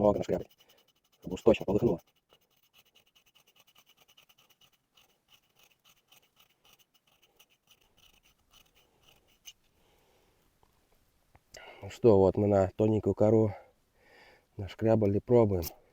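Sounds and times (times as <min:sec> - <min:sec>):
knife scraping bark: 0:00.0 - 0:09.6.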